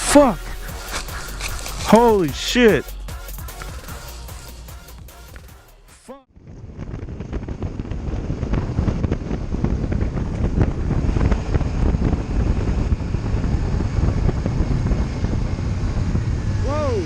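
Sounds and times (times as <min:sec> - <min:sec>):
road noise: 0:00.0 - 0:05.5, 0:07.9 - 0:17.0
wind buffeting microphone: 0:06.3 - 0:17.0.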